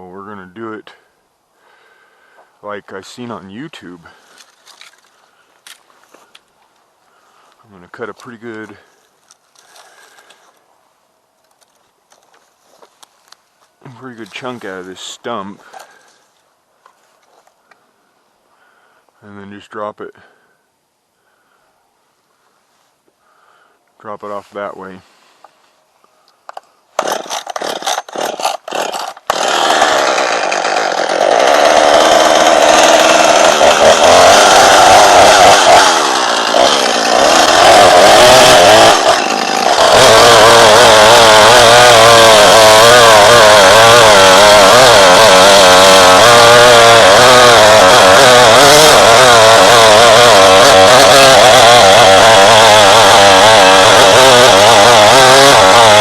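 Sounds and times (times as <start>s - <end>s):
chainsaw cutting wood: 26.5s - 56.0s.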